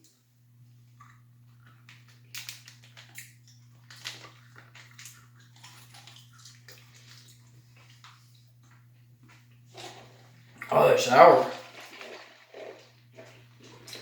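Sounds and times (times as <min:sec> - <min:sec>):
plastic package crinkling: 0:01.9 - 0:06.2.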